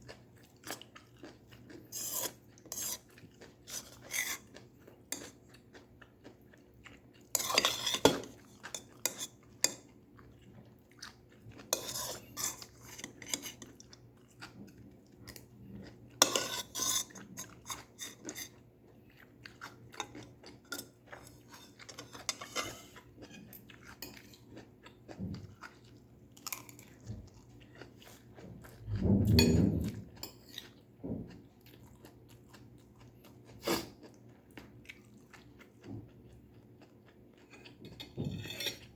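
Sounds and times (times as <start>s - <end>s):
chewing and crunching: 0.0s - 38.9s
utensils clinking on a dish: 29.3s - 30.5s.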